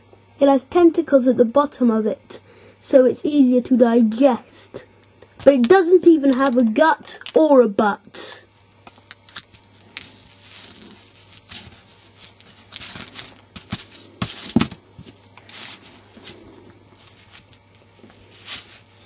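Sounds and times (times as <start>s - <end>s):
soft rustles of plasticine: 9.6s - 19.0s.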